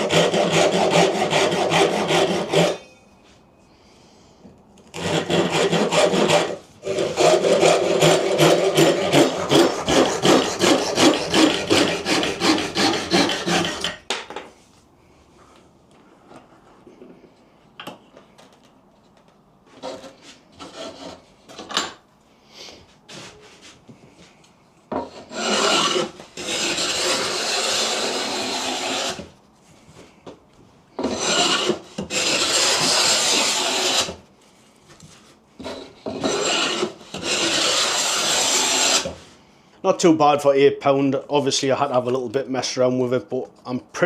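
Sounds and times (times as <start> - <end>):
hand tool rasping wood: 0.0 - 2.8, 4.9 - 14.0, 25.0 - 29.3, 31.0 - 34.2, 35.6 - 39.2.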